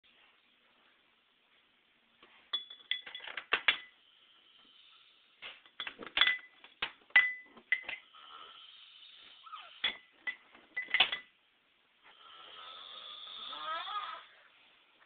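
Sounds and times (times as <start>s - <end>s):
sharp clicks and clinks: 5.6s - 8.1s.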